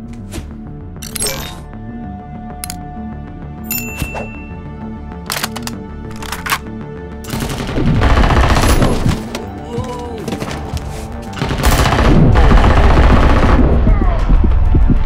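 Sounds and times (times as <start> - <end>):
action music: 0.1 - 15.0
rapid gunfire sound effects: 7.3 - 9.2, 11.4 - 14.6
heavy low rumble: 12.0 - 15.0.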